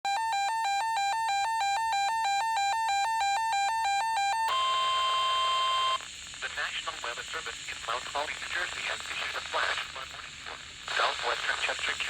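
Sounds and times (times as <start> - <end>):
steady high alarm tone: 0.1 - 6.0.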